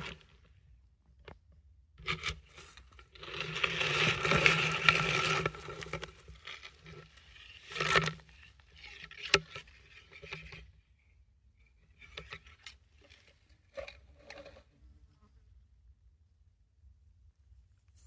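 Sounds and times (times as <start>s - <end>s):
scraping and rustling: 2.1s - 10.8s.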